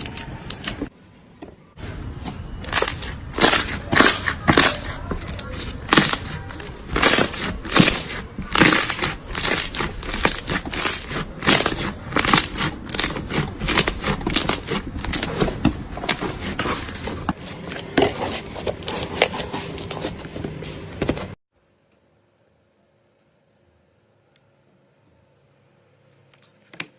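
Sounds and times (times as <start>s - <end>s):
slime crackling and crunching: 2.6s - 20.2s.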